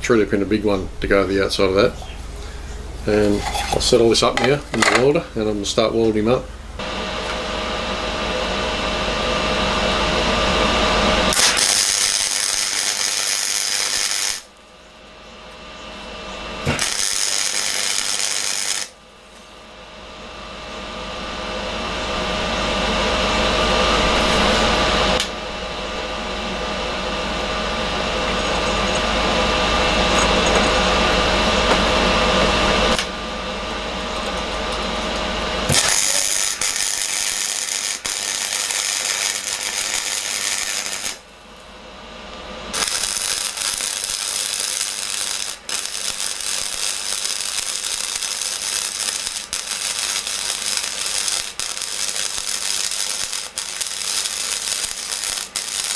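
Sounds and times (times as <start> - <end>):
electric welding arc: 6.8 - 14.6, 15.6 - 19.0, 26.4 - 41.3, 42.7 - 55.9.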